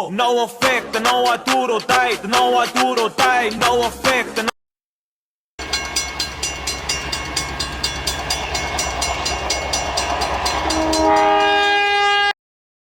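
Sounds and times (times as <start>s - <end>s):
train wheels clattering: 5.6s - 11.8s
train horn chord: 10.0s - 12.4s.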